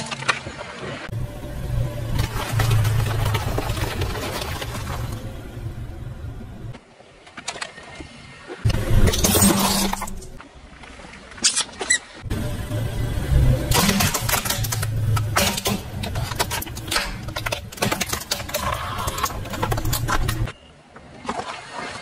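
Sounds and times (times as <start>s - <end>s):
car engine running low: 1.1s - 6.8s, 12.2s - 20.5s
objects cracking and crunching: 2.1s - 5.4s, 13.7s - 20.5s.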